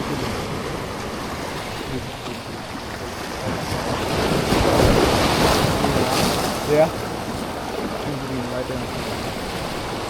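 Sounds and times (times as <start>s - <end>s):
surf washing: 0.0s - 10.0s
wind buffeting microphone: 0.0s - 10.0s.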